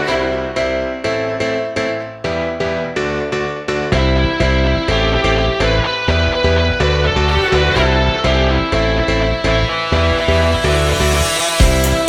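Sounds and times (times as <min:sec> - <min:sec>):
pitched instrumental melody: 0:00.0 - 0:12.0
pulsing bass notes: 0:03.9 - 0:12.0.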